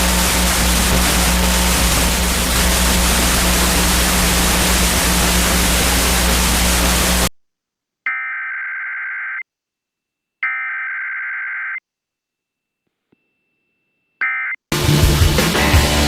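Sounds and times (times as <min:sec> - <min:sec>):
low hum: 0:00.0 - 0:07.4
radio static hiss: 0:00.0 - 0:07.4.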